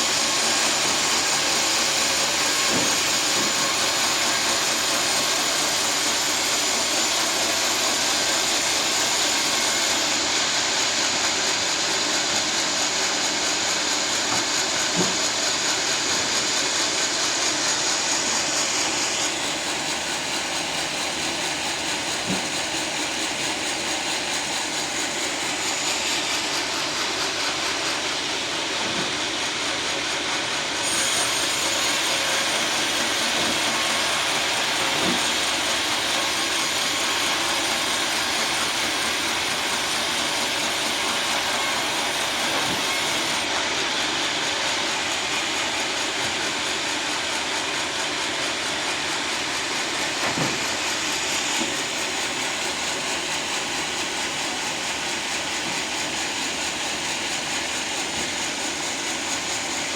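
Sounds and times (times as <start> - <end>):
sawmill sawing a log: 0.0 - 59.9.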